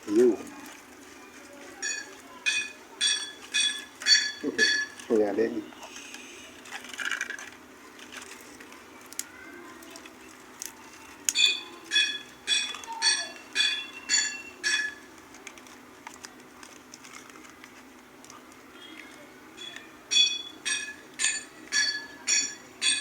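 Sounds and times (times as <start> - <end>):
ringing metal struck by hammer: 1.8 - 5.0, 11.4 - 15.0, 19.6 - 23.0.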